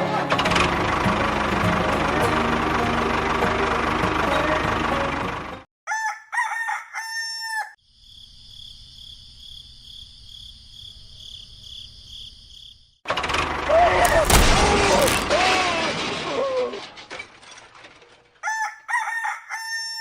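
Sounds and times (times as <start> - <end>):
rooster crowing: 5.9 - 7.8, 18.4 - 20.0.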